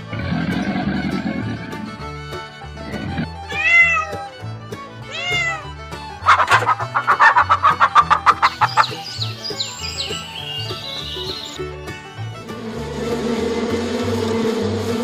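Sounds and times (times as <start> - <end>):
background music: 0.0 - 15.0
rapidly pulsing animal call: 5.1 - 11.6
animal calls: 6.2 - 11.6.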